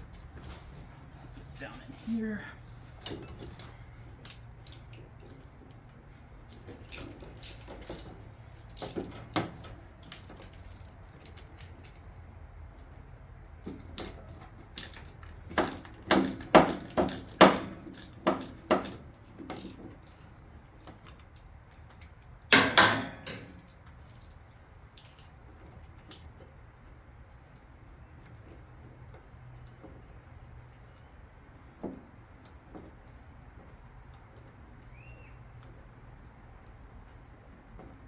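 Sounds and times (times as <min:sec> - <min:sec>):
metal tools clinking: 0:03.0 - 0:05.7, 0:06.5 - 0:12.0, 0:13.7 - 0:20.2, 0:20.8 - 0:25.4.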